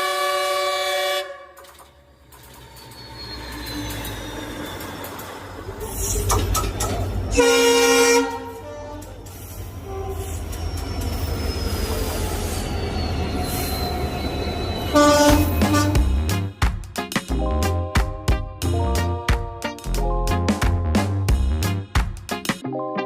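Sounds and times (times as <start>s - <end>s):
locomotive horn blasting: 0.0s - 1.8s, 7.3s - 9.2s, 14.9s - 16.3s
passing train rumble: 1.4s - 16.6s.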